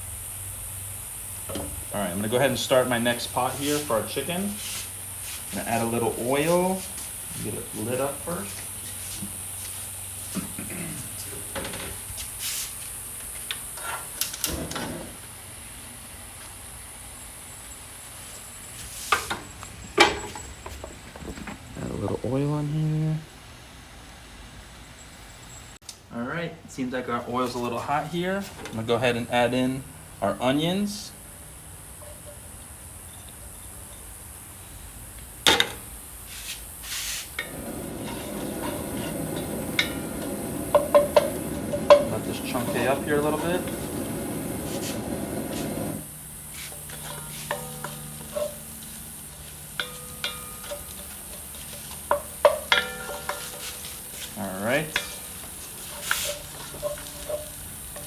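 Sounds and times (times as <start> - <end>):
steady high hiss: 0.0 - 58.0
onions sizzling in oil: 36.3 - 58.0
cookware knocking and clattering: 37.4 - 46.0, 47.0 - 48.7, 49.8 - 53.9.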